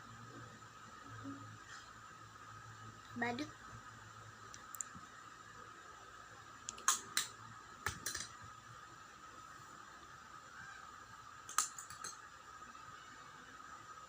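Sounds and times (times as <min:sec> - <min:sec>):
faint steady hum: 0:00.0 - 0:14.0
makeup items clicking and tapping: 0:06.7 - 0:08.4, 0:11.5 - 0:12.2.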